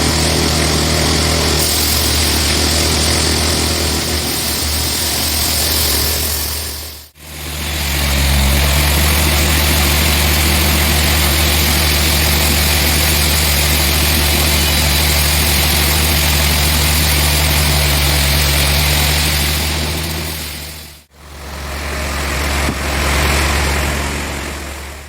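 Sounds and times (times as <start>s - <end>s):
sawmill machinery running: 0.0s - 25.0s.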